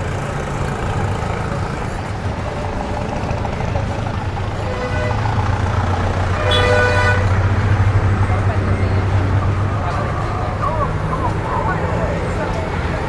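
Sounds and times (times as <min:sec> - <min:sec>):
street traffic: 0:00.0 - 0:13.0
vehicle engine humming: 0:00.0 - 0:13.0
car horn toot: 0:06.3 - 0:07.4.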